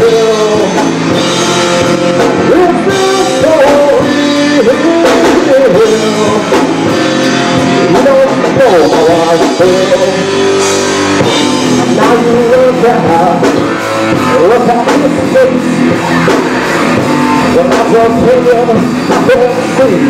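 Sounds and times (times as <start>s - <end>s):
drums: 0.0s - 20.0s
electric guitar: 0.0s - 20.0s.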